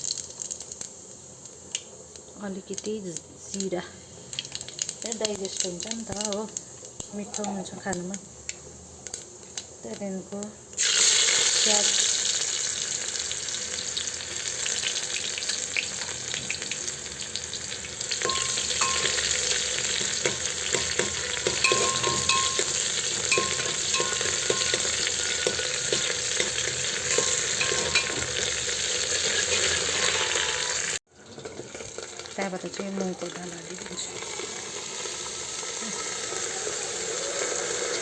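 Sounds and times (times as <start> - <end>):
onion sizzling in oil: 0.0 - 38.0
spoon scraping a pot: 18.2 - 30.9.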